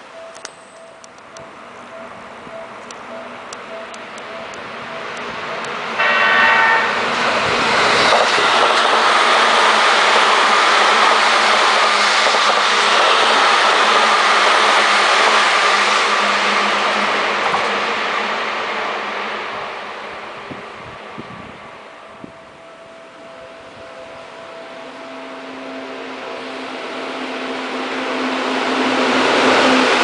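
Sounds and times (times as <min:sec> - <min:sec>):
train wheels roaring on rail: 0:00.0 - 0:30.0
train horn blast: 0:06.0 - 0:07.3.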